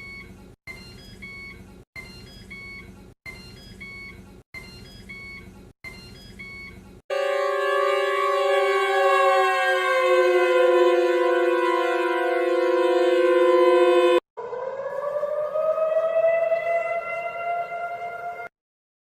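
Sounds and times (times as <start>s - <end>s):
electronic alert beeps: 0.0s - 6.8s
multi-tone alarm chord: 7.1s - 18.4s.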